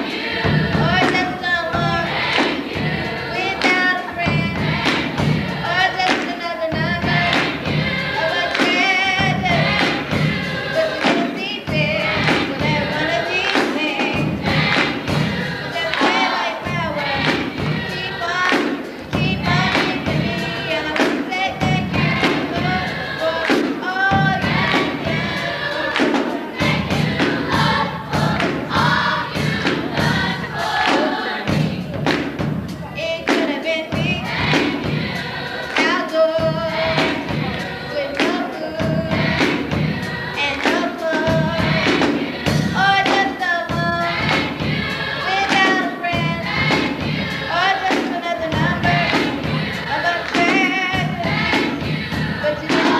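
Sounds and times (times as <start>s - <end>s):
choir singing gospel: 0.0s - 52.9s
steady beat: 0.0s - 52.9s.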